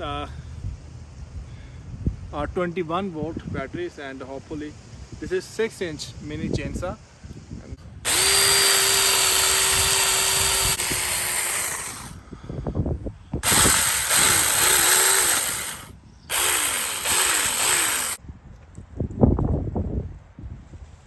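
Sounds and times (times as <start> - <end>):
mini chainsaw cutting wood: 8.1 - 12.2, 13.4 - 18.2.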